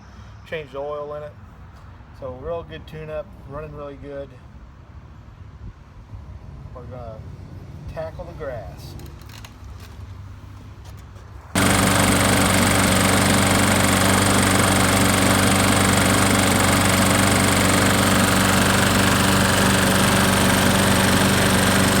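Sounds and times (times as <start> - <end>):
lawn mower engine running: 11.6 - 22.0.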